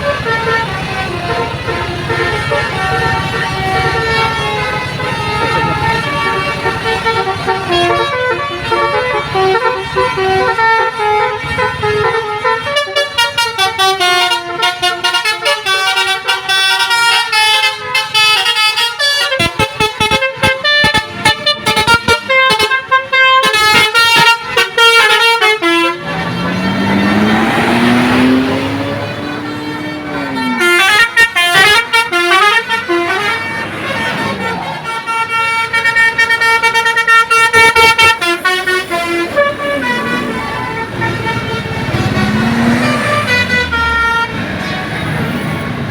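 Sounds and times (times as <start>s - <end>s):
multi-tone bus air horn melody: 0.0s - 45.9s.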